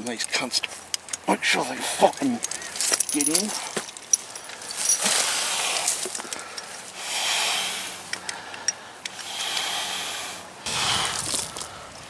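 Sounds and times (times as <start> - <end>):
man breathing hard: 3.5 - 12.0
light clicks: 8.0 - 9.7.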